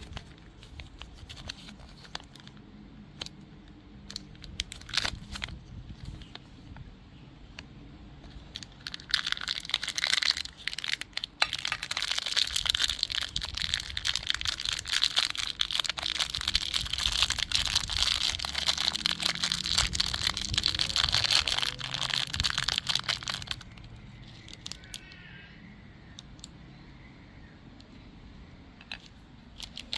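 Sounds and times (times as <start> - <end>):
plastic packaging crinkling: 0.0 - 6.8, 8.2 - 25.1, 28.9 - 29.9.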